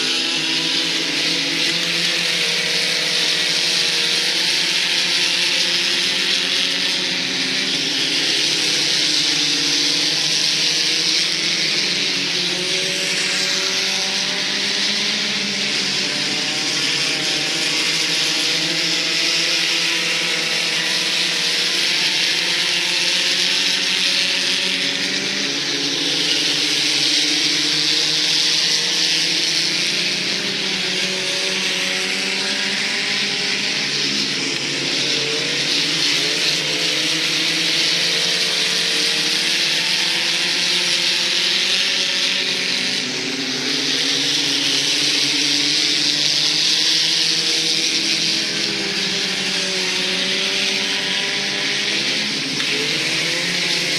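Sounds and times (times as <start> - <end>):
race car engines running laps: 0.0 - 53.9.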